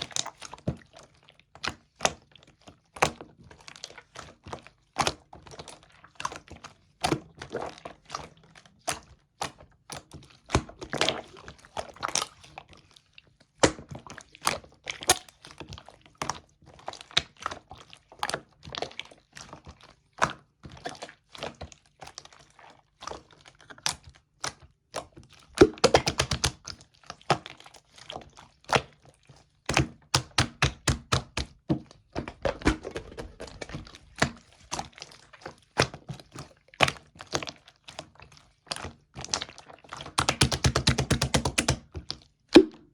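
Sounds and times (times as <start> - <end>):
slime squishing and popping: 25.6 - 26.7, 29.7 - 35.2, 38.6 - 42.9.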